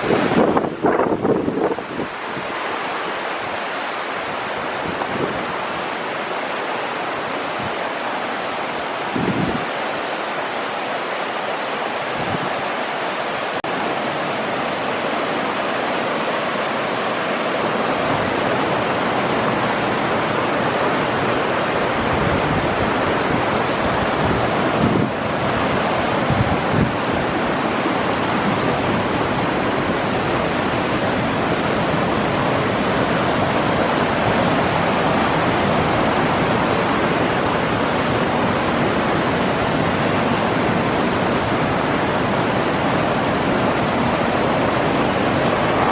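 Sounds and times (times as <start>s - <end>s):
heavy rainstorm: 0.0s - 45.9s
wind buffeting microphone: 0.0s - 45.9s.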